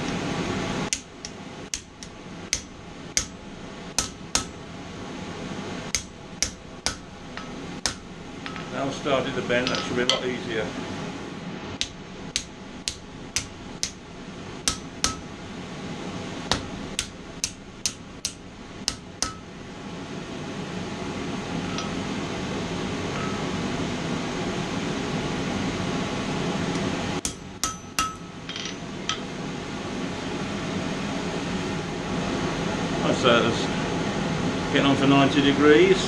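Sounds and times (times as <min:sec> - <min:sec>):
hammer blows on metal: 0:11.8 - 0:15.4, 0:16.5 - 0:19.5.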